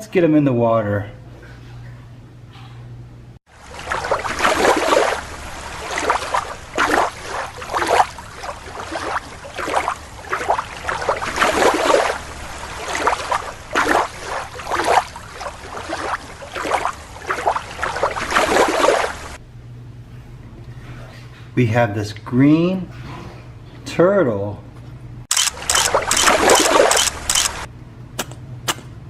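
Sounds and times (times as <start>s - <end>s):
water splashing in a tank: 3.5s - 19.4s, 25.3s - 27.7s.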